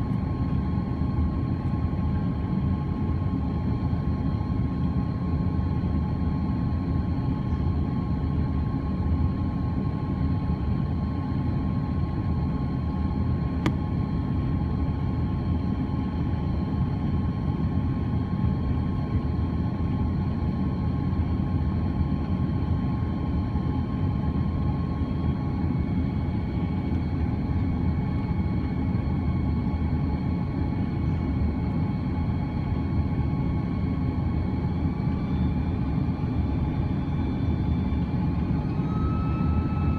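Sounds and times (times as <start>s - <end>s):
aircraft cabin engine rumble: 0.0s - 39.9s.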